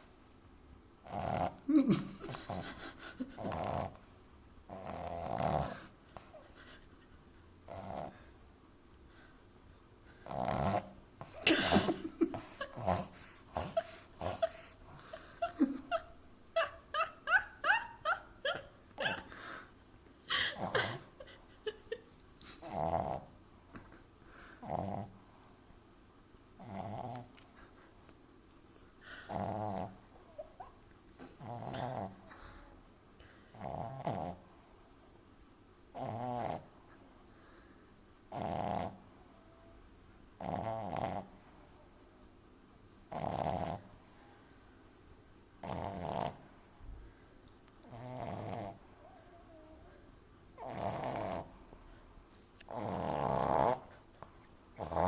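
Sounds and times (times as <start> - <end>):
puppy snoring loudly: 1.0 - 1.6, 3.4 - 4.0, 4.7 - 5.9, 7.7 - 8.3, 10.2 - 11.8, 12.6 - 14.7, 22.6 - 23.3, 24.6 - 25.2, 26.6 - 27.3, 29.3 - 30.0, 31.4 - 32.7, 33.5 - 34.4, 35.9 - 36.8, 38.3 - 39.7, 40.4 - 41.4, 43.1 - 44.0, 45.6 - 46.5, 47.8 - 48.8, 50.6 - 51.7, 52.7 - 54.0, 54.8 - 55.0.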